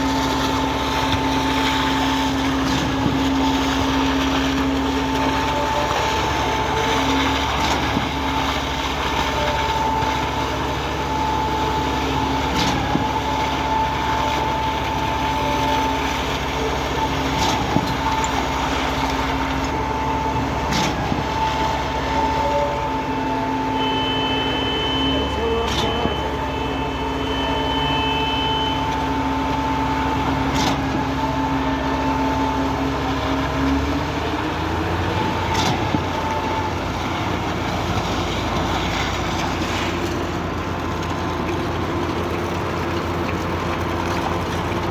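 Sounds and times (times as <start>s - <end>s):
concrete pump engine droning: 0.0s - 44.9s
brief high-pitched tone: 22.2s - 30.2s.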